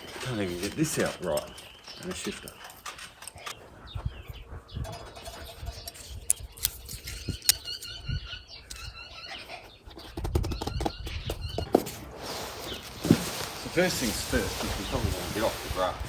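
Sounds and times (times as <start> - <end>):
wind rumbling on microphone: 3.6 - 9.1, 9.9 - 16.0.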